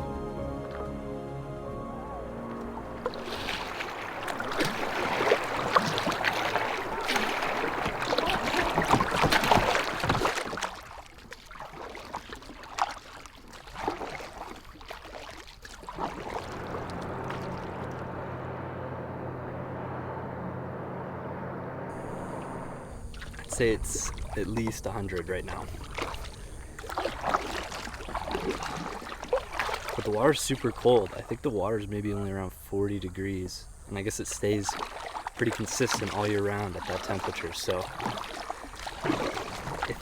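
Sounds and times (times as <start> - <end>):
low motor hum: 0.0 - 9.7, 15.9 - 26.8
water splashing around boat: 2.0 - 40.0.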